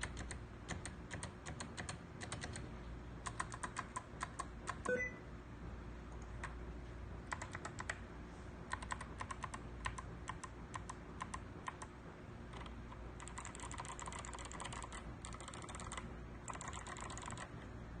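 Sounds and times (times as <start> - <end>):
clicky mechanical keyboard typing: 0.0 - 5.1, 7.3 - 8.0, 8.7 - 11.9, 12.5 - 17.5.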